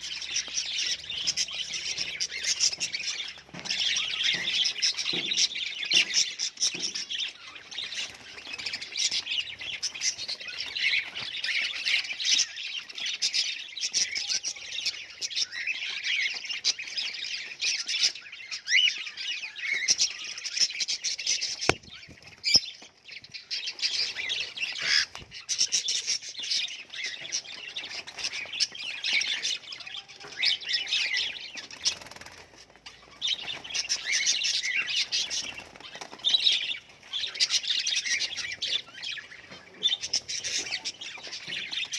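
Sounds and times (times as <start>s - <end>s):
budgerigars chattering and chirping: 0.0s - 41.9s.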